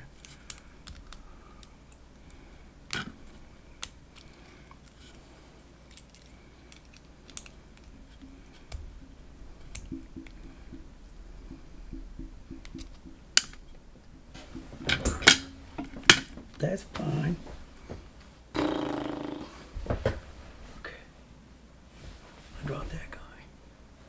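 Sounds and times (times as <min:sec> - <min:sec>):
padlock metal clicks and taps: 0:14.9 - 0:16.4.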